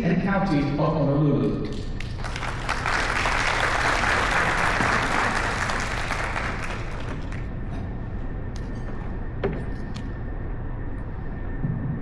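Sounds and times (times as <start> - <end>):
audience applauding: 2.0 - 7.5.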